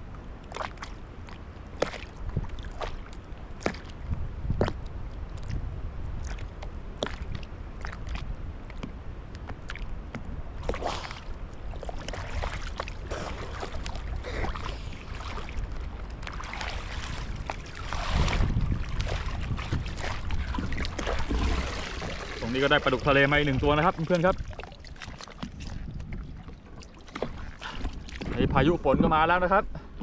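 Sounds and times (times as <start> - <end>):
water sloshing against boat: 0.0 - 30.0
low rumble: 15.6 - 24.7.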